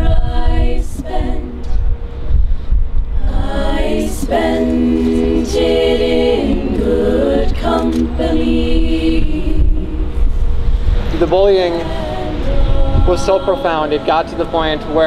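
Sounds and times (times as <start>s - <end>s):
a cappella group singing: 0.0s - 2.0s, 3.1s - 15.0s
wind rumble on microphone: 0.0s - 15.0s.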